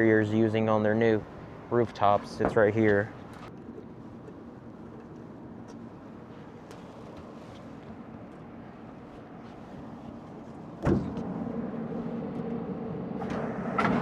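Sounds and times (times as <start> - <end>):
air conditioning unit humming: 0.0 - 14.0
loud clunk: 13.2 - 14.0.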